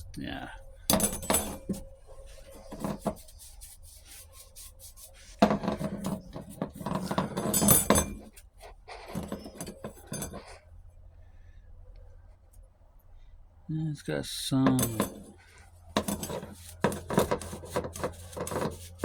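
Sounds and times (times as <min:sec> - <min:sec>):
metal clutch plates scraping: 0:00.8 - 0:03.6, 0:05.4 - 0:10.6, 0:14.7 - 0:19.0.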